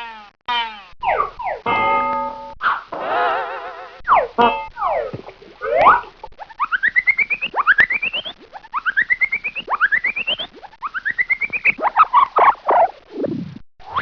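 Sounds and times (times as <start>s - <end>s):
squeaky rising cartoon glides: 4.0s - 12.9s
wobbling warble: 4.0s - 13.3s.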